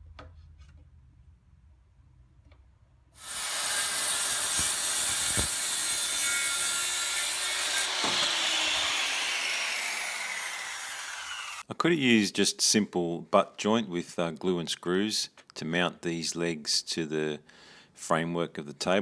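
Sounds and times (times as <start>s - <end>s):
power tool cutting timber: 3.2s - 11.6s.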